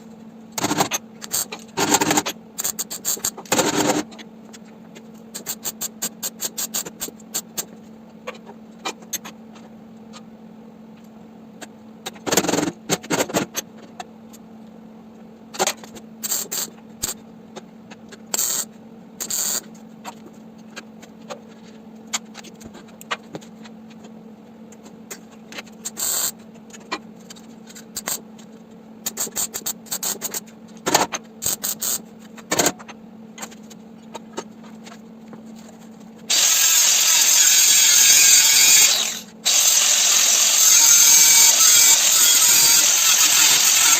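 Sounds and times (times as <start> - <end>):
welder crackling: 36.3 - 43.9.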